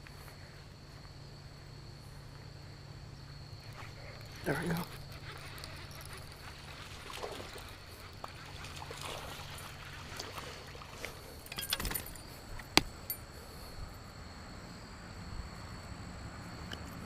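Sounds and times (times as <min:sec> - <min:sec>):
water splashing and dripping: 0:06.0 - 0:12.1
rustles and clicks: 0:11.0 - 0:13.3.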